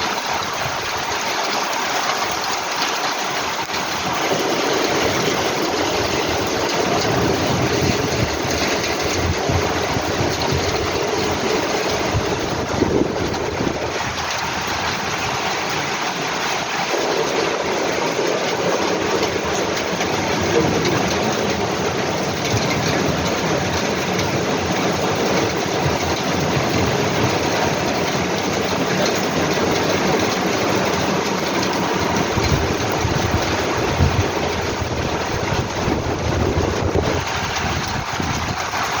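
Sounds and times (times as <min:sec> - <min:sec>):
heavy rain: 0:00.0 - 0:39.0.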